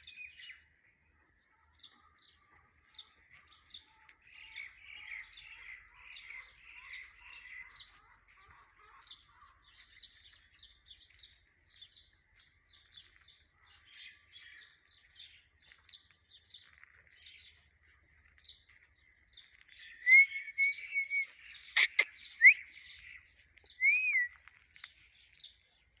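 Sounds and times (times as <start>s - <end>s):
birds chirping: 0.0s - 26.0s
whistled bird calls: 19.8s - 24.5s.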